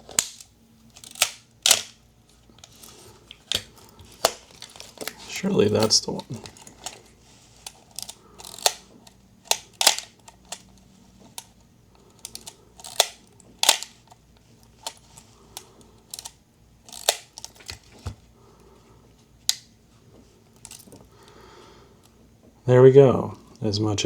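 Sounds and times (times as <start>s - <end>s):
film camera mechanism clicking: 0.1s - 2.0s, 2.6s - 17.9s, 20.6s - 21.0s.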